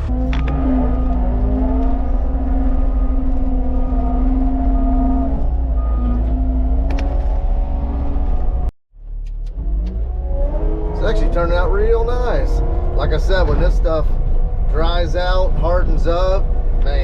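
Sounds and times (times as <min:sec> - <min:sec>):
deep rumble rolling on gravel: 0:00.0 - 0:08.7
diesel engine running: 0:00.0 - 0:17.0.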